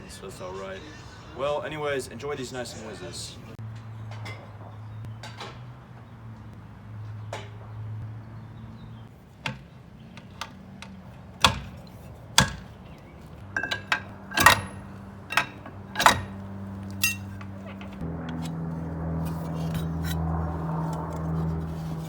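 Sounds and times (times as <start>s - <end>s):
steady low hum: 11.2s - 22.0s
tools striking metal: 11.4s - 12.8s, 13.5s - 18.6s.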